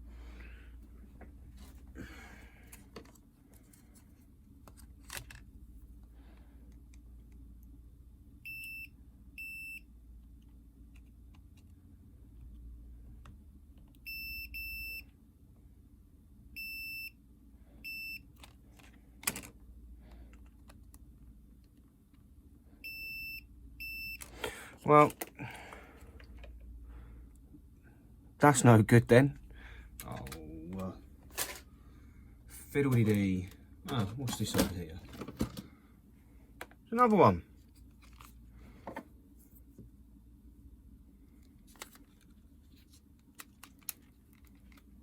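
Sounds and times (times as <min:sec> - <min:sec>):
multimeter continuity beeps: 0:08.4 - 0:09.9, 0:14.0 - 0:15.1, 0:16.6 - 0:17.2, 0:17.8 - 0:18.3, 0:22.8 - 0:24.3.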